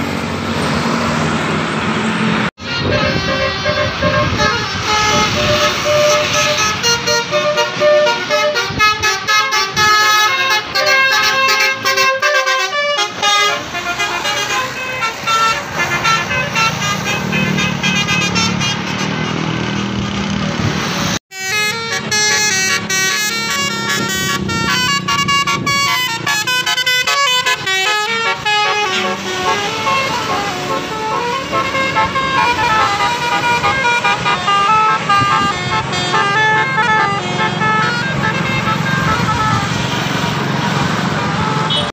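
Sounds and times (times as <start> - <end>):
bus engine running: 0.0 - 41.9
musical air horns: 2.6 - 20.3, 21.3 - 41.9.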